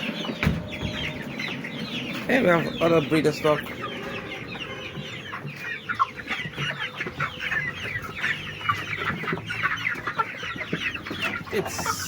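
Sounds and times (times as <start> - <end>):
chickens calling: 0.0 - 12.0.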